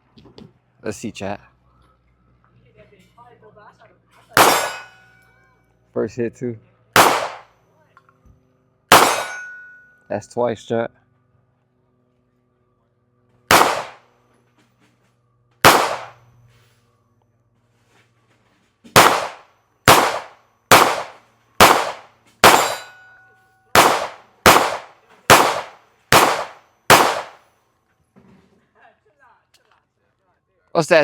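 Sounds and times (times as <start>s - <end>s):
gunshots with echo: 4.4s - 4.9s, 7.0s - 7.5s, 8.9s - 9.5s, 13.5s - 14.0s, 15.6s - 16.2s, 19.0s - 23.0s, 23.8s - 27.4s.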